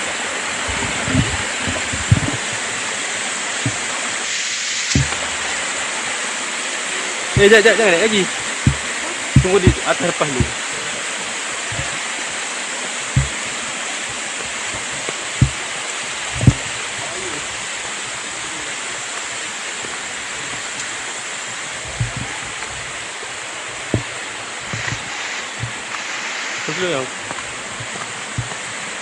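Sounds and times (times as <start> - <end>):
short low thumps: 0.0 - 2.9, 3.6 - 4.0, 4.9 - 6.0, 7.4 - 10.8, 11.6 - 12.2, 13.1 - 19.2, 19.8 - 26.0, 27.2 - 28.8
waterfall rushing: 0.0 - 29.0.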